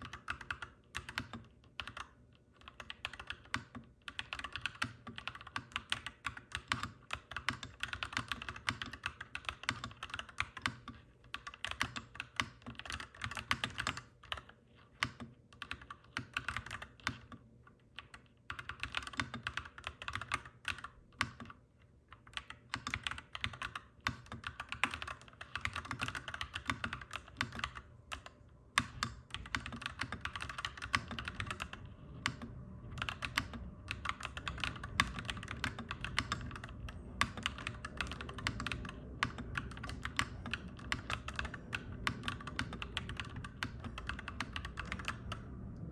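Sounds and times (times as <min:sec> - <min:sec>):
mechanical keyboard typing: 0:00.0 - 0:45.5
low hum: 0:27.8 - 0:45.9.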